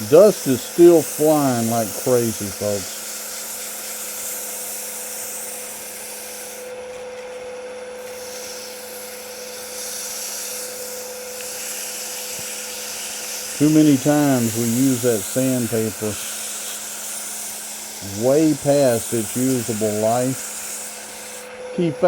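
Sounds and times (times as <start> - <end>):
sandpaper rubbing hiss: 0.0 - 6.7, 8.0 - 21.5
lathe motor hum: 0.0 - 22.0.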